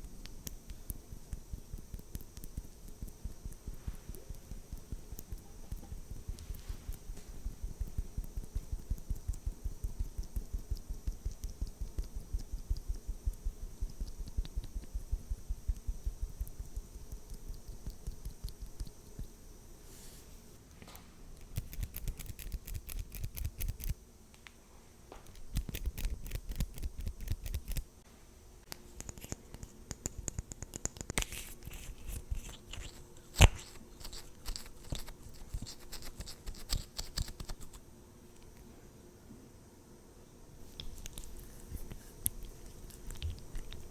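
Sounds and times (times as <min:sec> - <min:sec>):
scratching on makeup tools: 0:21.4 - 0:24.0, 0:28.8 - 0:37.8, 0:40.6 - 0:43.9.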